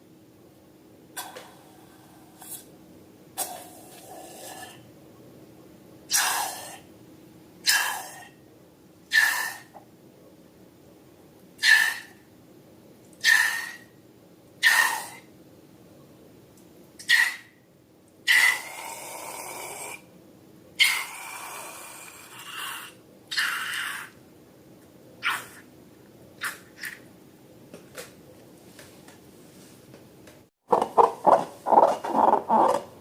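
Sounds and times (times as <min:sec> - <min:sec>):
soft rustles: 0:28.4 - 0:30.0.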